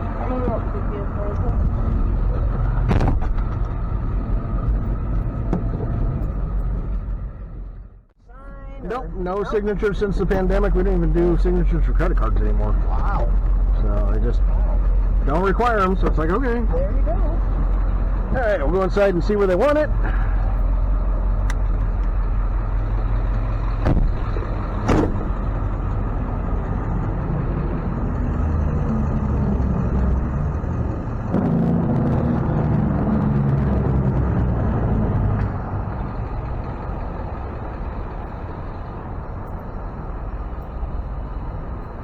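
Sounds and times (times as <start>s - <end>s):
truck engine idling: 0.0s - 42.0s
sharp knocks: 2.8s - 3.6s, 23.8s - 25.4s.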